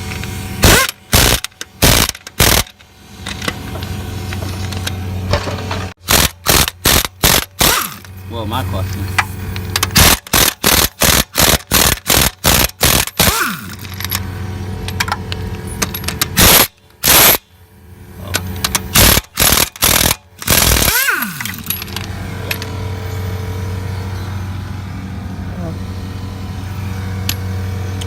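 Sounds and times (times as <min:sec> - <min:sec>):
steady low hum: 0:00.0 - 0:28.0
impact wrench rattling: 0:09.1 - 0:14.2, 0:18.5 - 0:22.8.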